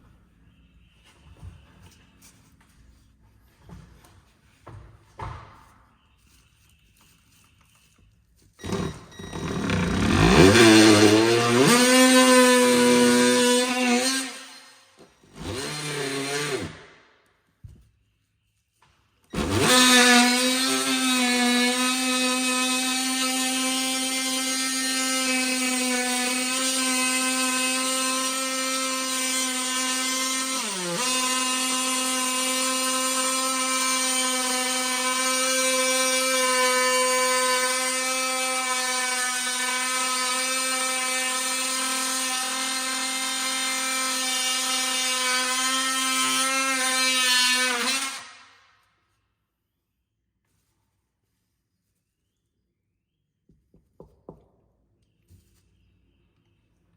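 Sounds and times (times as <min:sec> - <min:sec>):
electric power tool motor running: 0:08.6 - 0:14.6, 0:15.4 - 0:16.8, 0:19.4 - 0:45.4.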